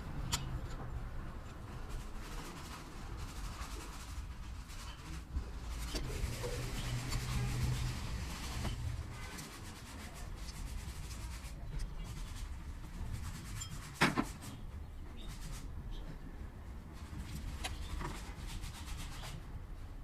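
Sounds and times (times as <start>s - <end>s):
tools rubbing and scraping metal: 0.0s - 15.7s.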